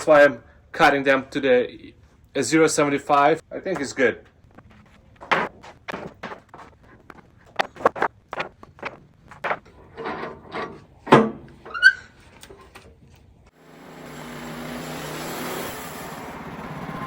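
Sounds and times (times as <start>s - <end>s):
wooden boards knocking: 5.2s - 9.8s
sawmill engine running: 13.6s - 17.0s.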